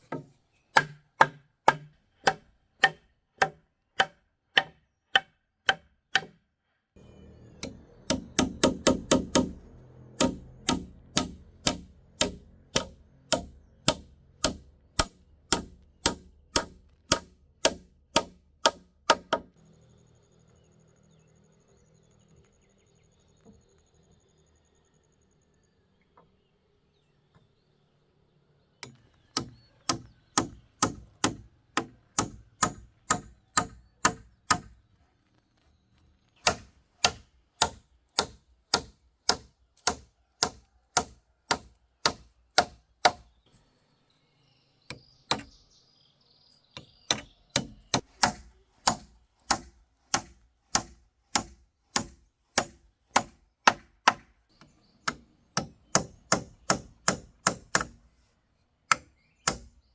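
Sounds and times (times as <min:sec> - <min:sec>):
sharp chopping blows: 0:10.2 - 0:19.5.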